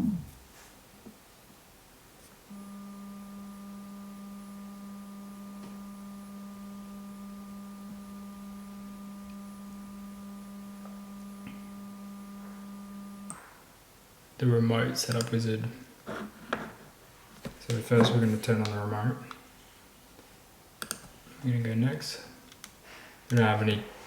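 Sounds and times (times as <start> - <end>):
electric motor humming: 2.5 - 13.4.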